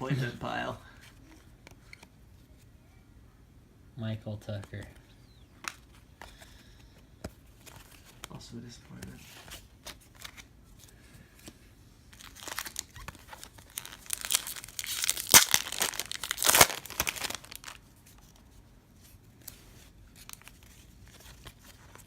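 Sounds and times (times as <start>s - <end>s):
wrapper tearing and crinkling: 12.1s - 17.8s.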